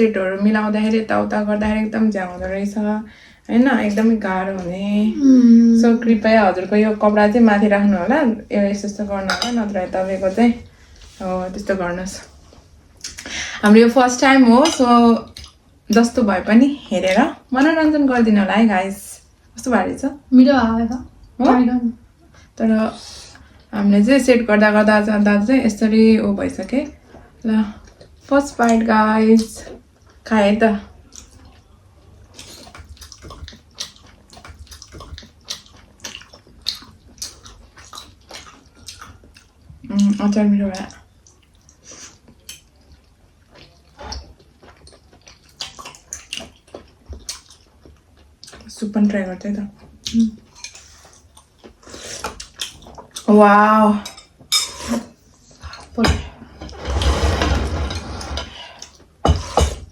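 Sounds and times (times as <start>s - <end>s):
wet chewing and mouth sounds: 31.0s - 48.8s, 49.8s - 53.4s.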